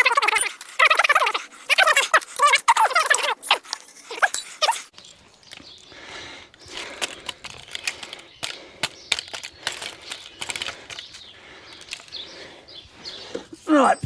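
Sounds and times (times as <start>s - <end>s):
tools and metal parts clicking: 0.0s - 4.9s.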